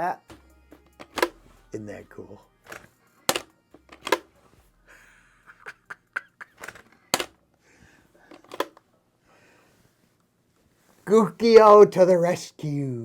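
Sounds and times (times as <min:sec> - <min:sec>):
hard parts clicking and tapping: 0:00.2 - 0:01.4, 0:02.7 - 0:04.3, 0:06.4 - 0:07.4, 0:08.3 - 0:08.8.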